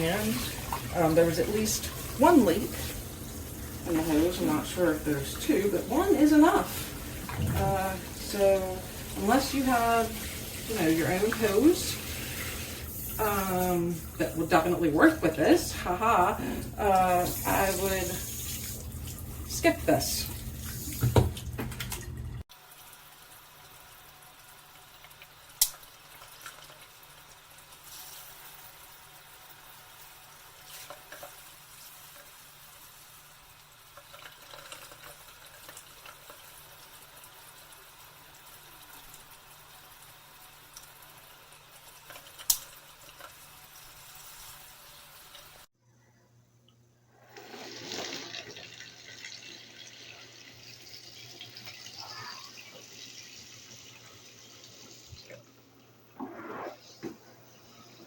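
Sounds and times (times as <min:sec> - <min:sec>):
water splashing into sink: 0:00.0 - 0:22.4, 0:47.3 - 0:55.5.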